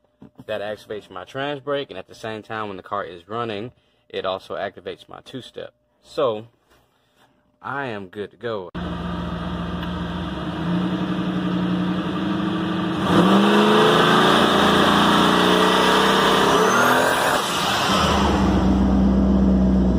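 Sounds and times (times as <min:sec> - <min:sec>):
engine idling and revving: 0:08.8 - 0:19.9.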